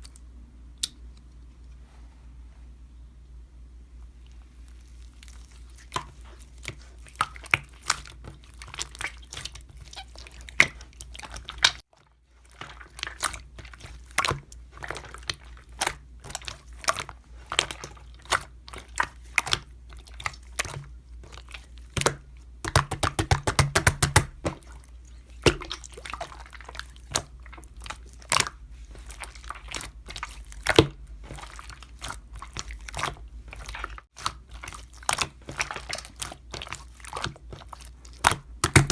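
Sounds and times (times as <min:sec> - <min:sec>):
slime clicking and popping: 0:21.9 - 0:24.6, 0:38.1 - 0:38.9.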